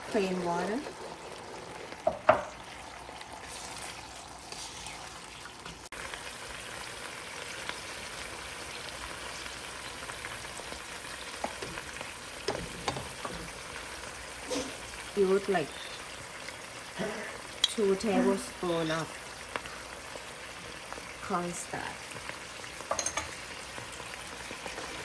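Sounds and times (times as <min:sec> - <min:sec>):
sauce sizzling in a saucepan: 0:00.0 - 0:25.0
utensil clinking against pan: 0:22.9 - 0:23.3.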